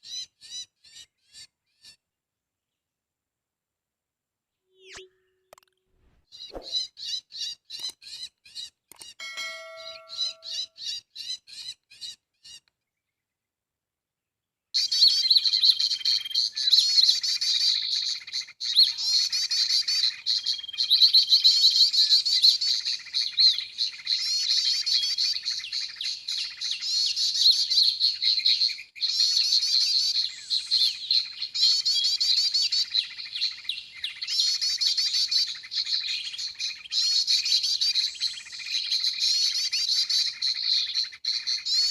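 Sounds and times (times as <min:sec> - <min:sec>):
bird chirping through speaker: 0:04.7 - 0:05.7, 0:09.1 - 0:11.6
short ringing tone: 0:09.2 - 0:10.8
dense bird chattering: 0:09.4 - 0:12.1.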